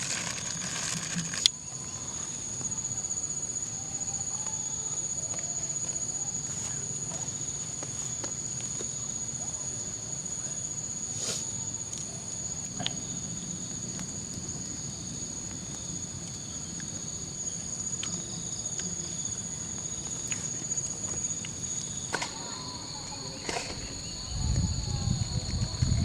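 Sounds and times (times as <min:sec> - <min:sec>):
crickets trilling: 0:00.0 - 0:26.0.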